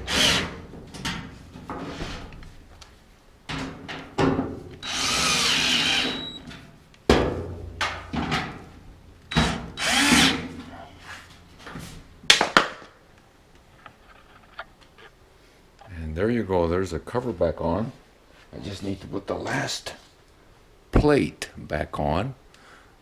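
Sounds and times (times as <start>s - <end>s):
power drill driving screws: 0.0s - 0.5s, 4.8s - 6.4s, 9.3s - 10.5s.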